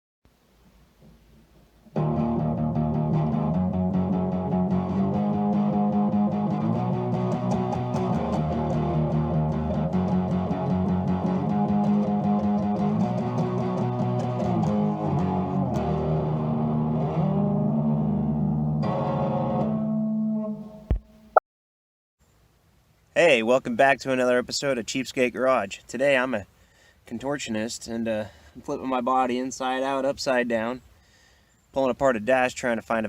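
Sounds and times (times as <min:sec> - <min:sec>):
guitar music with bass line: 0:01.9 - 0:21.4.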